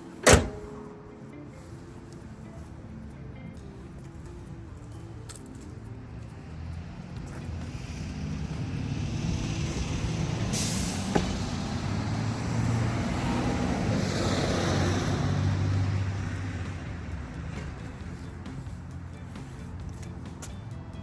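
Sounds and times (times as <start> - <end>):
motor vehicle running: 0.0 - 21.0
air hiss burst: 10.4 - 11.8.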